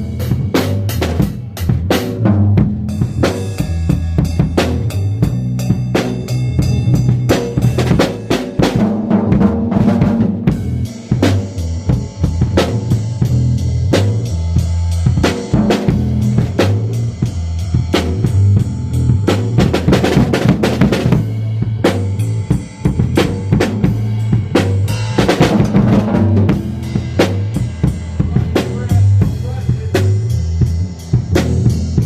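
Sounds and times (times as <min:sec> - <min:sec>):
bass line: 0:00.0 - 0:32.0
drum beat with kick and snare: 0:00.0 - 0:32.0.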